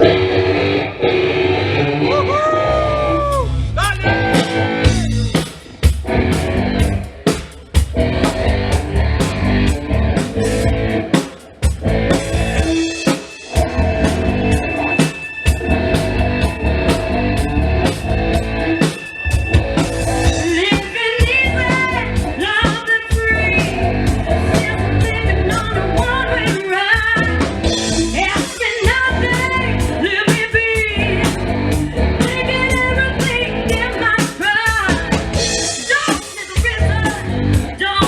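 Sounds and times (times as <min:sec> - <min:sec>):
live rock band playing: 0:00.0 - 0:38.0
person singing: 0:02.0 - 0:05.4, 0:20.0 - 0:38.0.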